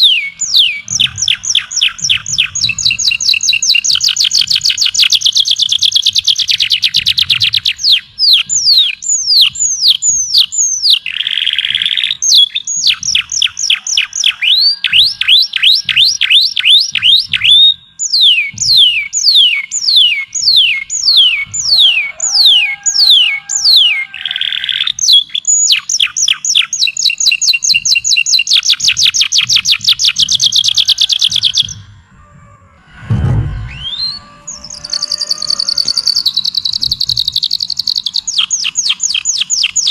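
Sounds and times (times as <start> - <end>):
songbird singing: 0.0 - 32.9, 33.6 - 39.9
low thump: 32.9 - 34.7.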